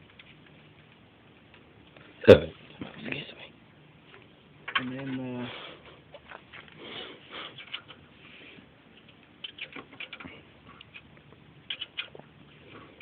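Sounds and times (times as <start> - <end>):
rustling of hands handling parts: 4.0 - 11.2.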